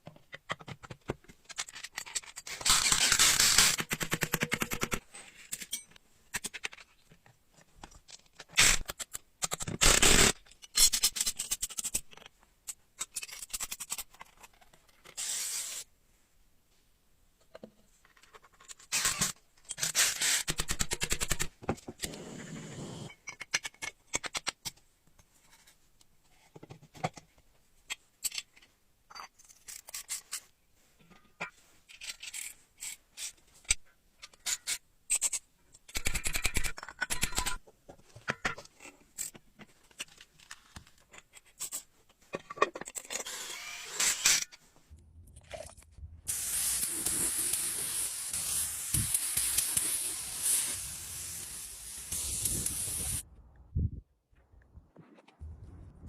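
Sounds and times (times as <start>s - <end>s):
steady hiss: 46.3s - 53.2s.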